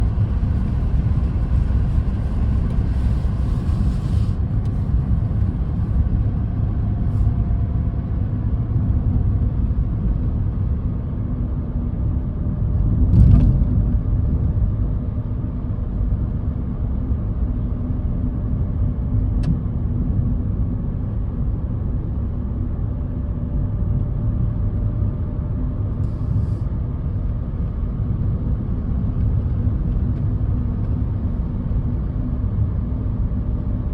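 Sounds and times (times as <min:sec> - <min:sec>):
car road and engine rumble: 0:00.0 - 0:33.9.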